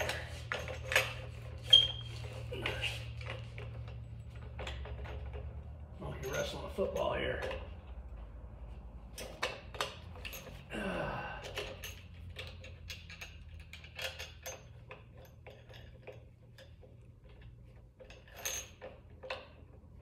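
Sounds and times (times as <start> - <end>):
metal tools clinking: 0.0 - 8.0, 9.1 - 19.9.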